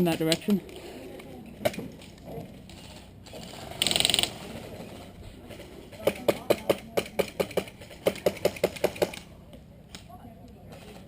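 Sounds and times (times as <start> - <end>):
airsoft gun rapid fire: 3.3 - 4.7, 5.5 - 9.3.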